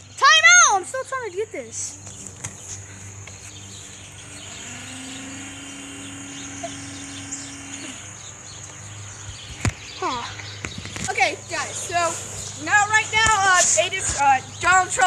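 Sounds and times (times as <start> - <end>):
small birds chirping: 0.0 - 15.0
steady low hum: 0.8 - 14.9
droning tone: 2.8 - 9.2.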